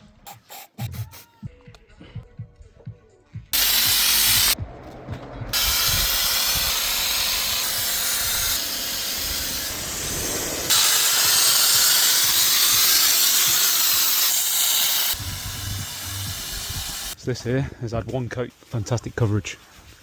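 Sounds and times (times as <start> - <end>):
spray gun hissing: 0.3 - 1.2, 3.6 - 4.6, 5.6 - 17.2.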